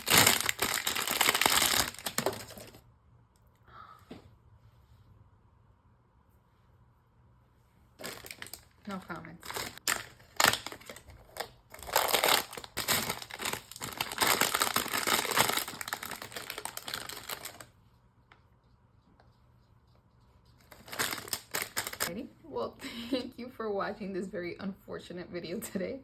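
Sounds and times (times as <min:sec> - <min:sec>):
packaging crinkling and tearing: 0:00.0 - 0:02.8, 0:08.0 - 0:17.7, 0:20.6 - 0:22.1.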